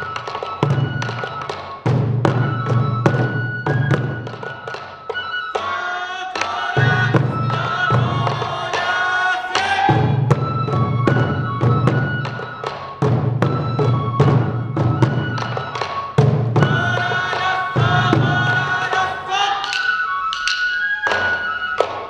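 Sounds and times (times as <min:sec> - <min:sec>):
bamboo flute: 0:00.0 - 0:22.0
taiko drums: 0:00.0 - 0:22.0
group of voices singing: 0:05.6 - 0:10.6, 0:16.6 - 0:20.1.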